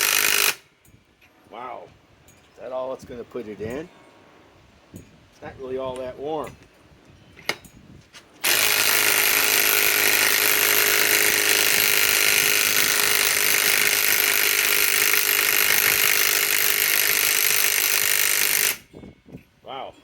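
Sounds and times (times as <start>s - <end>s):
impact wrench hammering on bolt: 0.0s - 0.6s, 8.4s - 18.9s.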